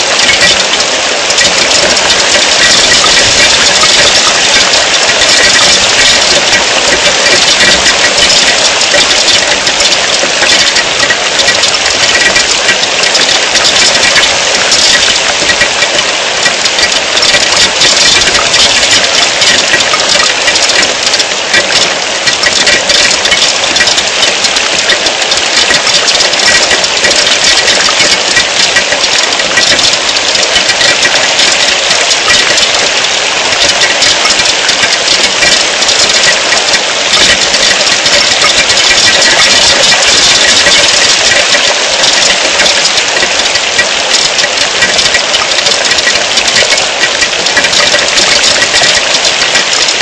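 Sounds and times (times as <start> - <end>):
heavy rain falling: 0.0 - 50.0.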